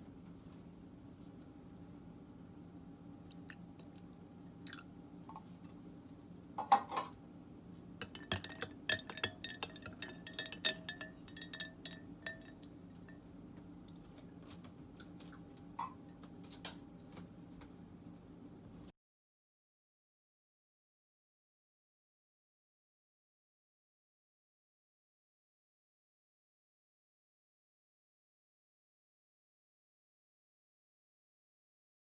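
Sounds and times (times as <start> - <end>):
low room hum: 0.0 - 18.9
tableware clinking: 8.0 - 13.2, 15.8 - 16.9.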